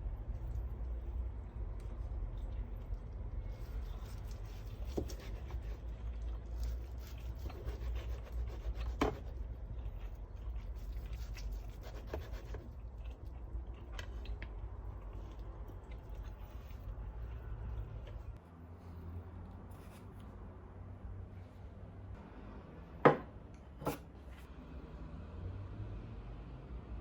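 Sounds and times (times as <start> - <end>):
soft rubbing and scraping: 16.1 - 20.4.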